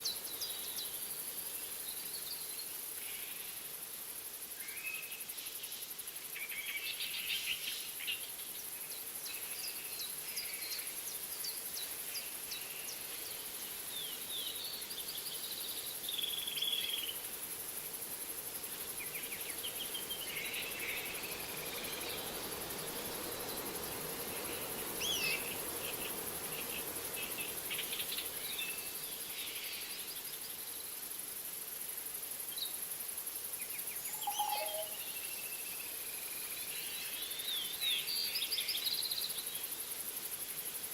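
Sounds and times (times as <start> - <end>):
bird calls and chirps: 33.7 - 39.5
high-pitched insect drone: 34.0 - 35.7.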